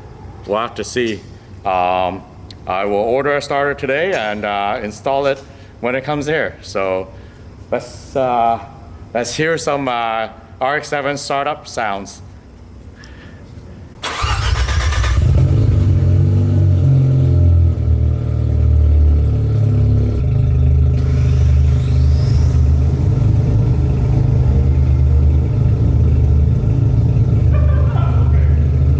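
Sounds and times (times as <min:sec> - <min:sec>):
rotary engine cranking and running: 0:14.0 - 0:15.9, 0:20.2 - 0:28.9.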